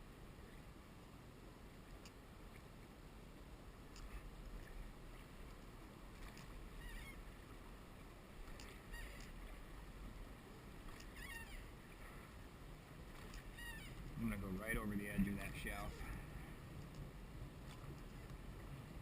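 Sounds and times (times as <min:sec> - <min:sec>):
oarlocks squeaking: 0:06.8 - 0:07.2, 0:08.6 - 0:09.4, 0:11.0 - 0:11.7, 0:13.3 - 0:14.1.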